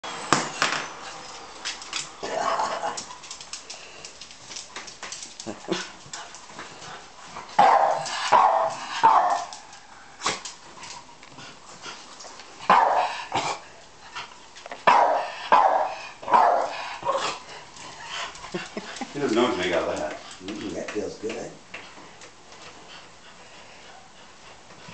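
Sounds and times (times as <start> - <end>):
dog barking: 7.6 - 9.5, 12.7 - 13.2, 14.8 - 17.2.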